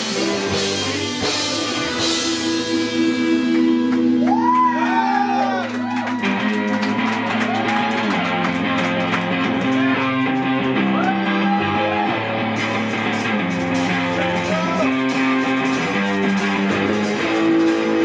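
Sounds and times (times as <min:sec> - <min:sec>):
lead guitar bending notes: 0:00.0 - 0:18.0
live rock band playing: 0:00.0 - 0:18.0.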